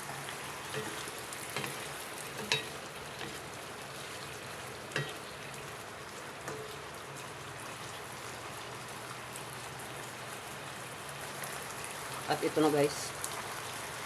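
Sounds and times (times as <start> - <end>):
meat sizzling in a pan: 0.0 - 14.0
utensil clinking on pan: 2.4 - 3.4.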